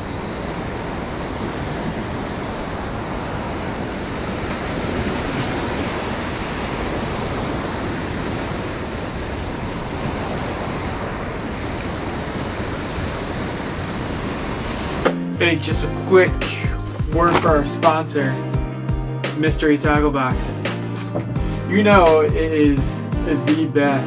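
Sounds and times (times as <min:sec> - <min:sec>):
wind on microphone: 0:00.0 - 0:15.1
ocean surf breaking on beach: 0:00.0 - 0:18.6.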